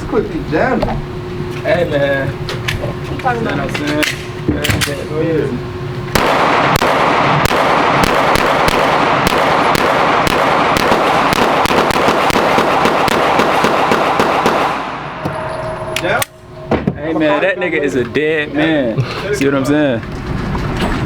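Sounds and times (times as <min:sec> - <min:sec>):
gunshots in quick succession: 0:06.2 - 0:15.2
steady echoing din: 0:06.2 - 0:17.0.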